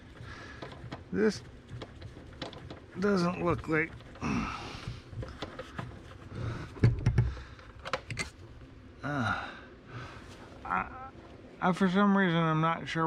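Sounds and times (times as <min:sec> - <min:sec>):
knocks and clicks of handling: 0:00.0 - 0:08.5.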